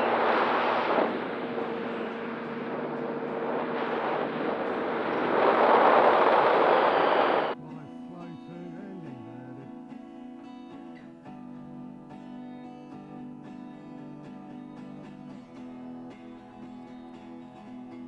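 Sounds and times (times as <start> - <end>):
acoustic guitar music: 0.0 - 5.9, 7.5 - 18.0
rushing wind: 0.0 - 7.6.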